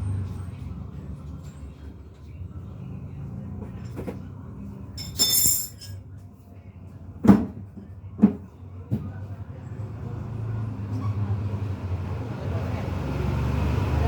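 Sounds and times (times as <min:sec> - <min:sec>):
metallic scrape with ringing: 0:05.0 - 0:06.0.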